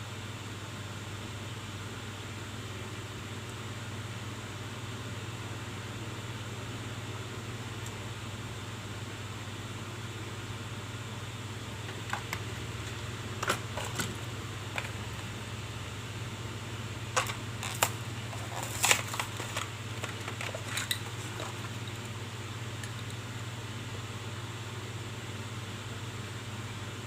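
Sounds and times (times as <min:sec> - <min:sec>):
steady low hum: 0:00.0 - 0:27.0
packaging clicks and crackles: 0:11.8 - 0:15.4, 0:17.1 - 0:22.2, 0:22.8 - 0:23.2.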